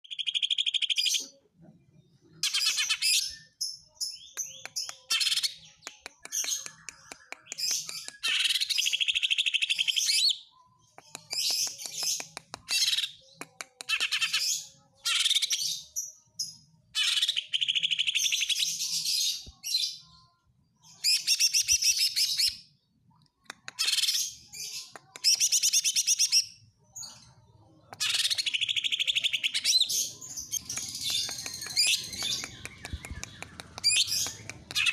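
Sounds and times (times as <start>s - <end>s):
bird singing chirps and trills: 23.8s - 34.9s.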